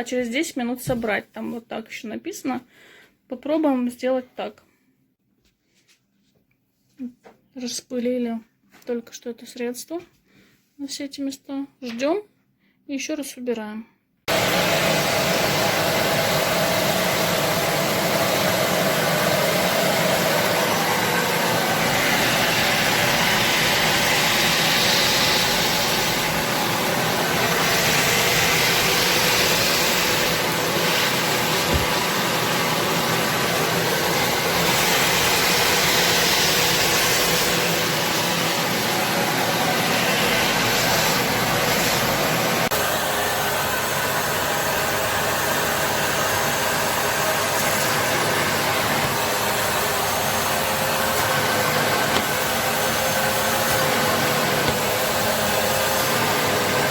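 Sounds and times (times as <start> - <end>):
washing vacuum cleaner running: 14.3 - 56.9.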